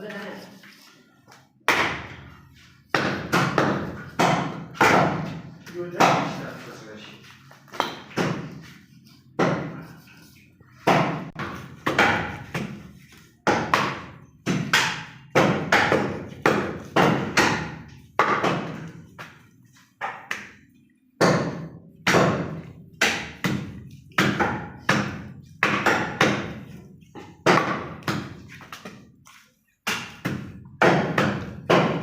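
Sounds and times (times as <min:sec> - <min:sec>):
cleaver chopping meat and bone: 0:02.9 - 0:05.4, 0:07.7 - 0:08.6, 0:09.4 - 0:09.8, 0:10.8 - 0:12.8, 0:13.4 - 0:18.9, 0:21.2 - 0:29.0, 0:29.8 - 0:32.0.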